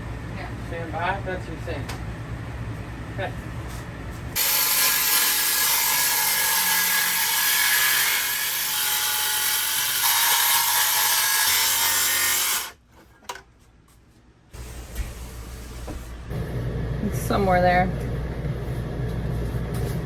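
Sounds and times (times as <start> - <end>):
power saw cutting countertop: 4.4 - 12.8.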